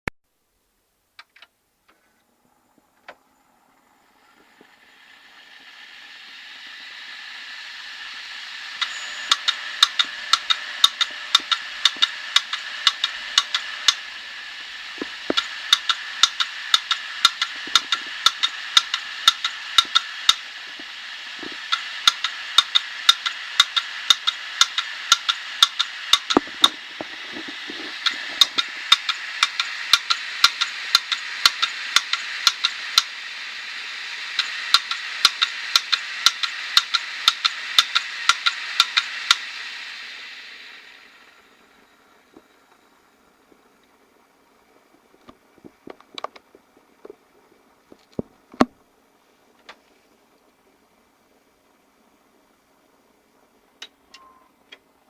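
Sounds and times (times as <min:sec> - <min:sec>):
hard disk drive spinning: 0:00.4 - 0:55.0
hard drive head clicking: 0:06.6 - 0:41.1, 0:44.9 - 0:47.2.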